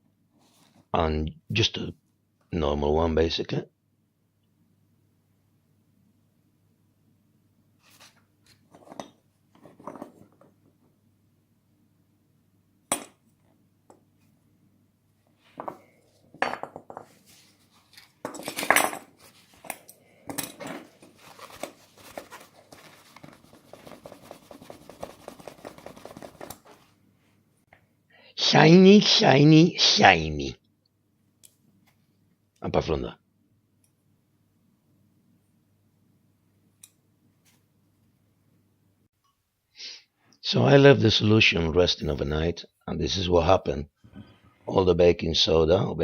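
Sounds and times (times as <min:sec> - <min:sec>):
rapid scratching and rubbing: 0:20.8 - 0:26.9.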